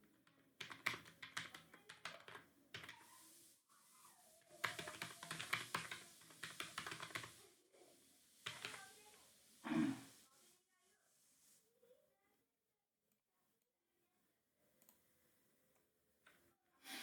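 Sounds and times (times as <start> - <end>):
computer keyboard typing: 0.0 - 3.3, 4.5 - 7.4, 8.4 - 9.0.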